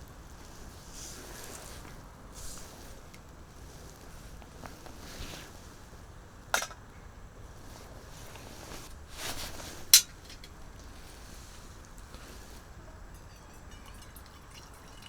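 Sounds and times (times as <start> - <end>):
cookware clinking: 6.5 - 6.8, 12.8 - 15.0.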